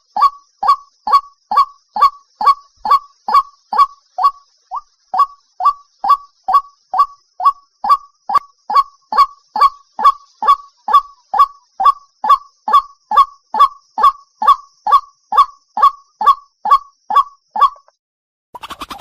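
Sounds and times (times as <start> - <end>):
bird calling short rising notes: 18.6 - 19.0.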